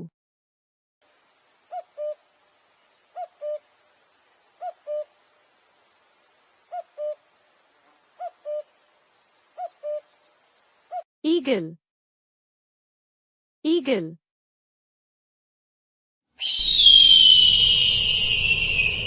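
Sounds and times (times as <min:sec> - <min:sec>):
cuckoo calling: 0:01.6 - 0:02.3, 0:03.0 - 0:03.8, 0:04.5 - 0:05.3, 0:06.6 - 0:07.4, 0:08.0 - 0:08.8, 0:09.5 - 0:11.0, 0:16.4 - 0:19.0.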